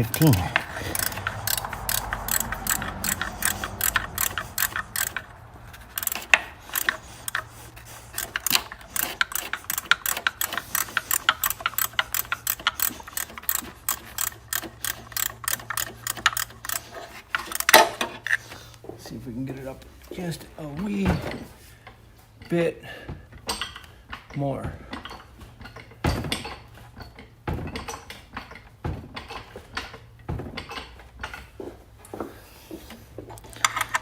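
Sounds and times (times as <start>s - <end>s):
ratchet wrench clicking: 0.0s - 18.4s, 33.4s - 34.0s.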